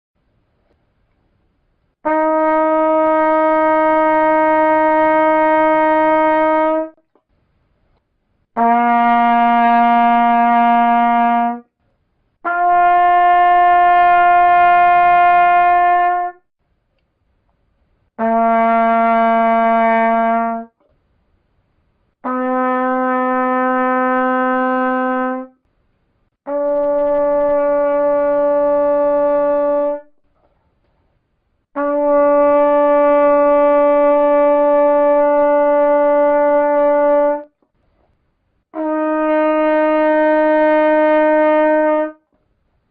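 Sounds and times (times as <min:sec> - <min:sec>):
trumpet long held notes: 0:02.0 - 0:07.0, 0:08.6 - 0:11.7, 0:12.4 - 0:16.4, 0:18.2 - 0:20.8, 0:22.2 - 0:25.6, 0:26.4 - 0:30.2, 0:31.8 - 0:37.5, 0:38.8 - 0:42.3.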